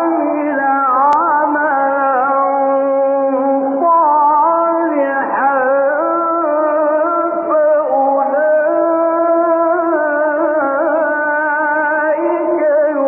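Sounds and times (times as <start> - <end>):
man chanting melodic recitation: 0.0 - 13.0.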